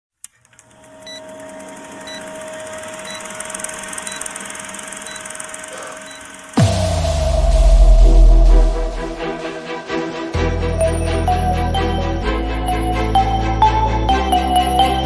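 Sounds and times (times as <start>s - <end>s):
electronic hum: 0.5s - 9.3s
short high beeps: 6.0s - 6.3s
music: 6.5s - 15.0s
deep hit with falling sweep: 6.6s - 10.7s.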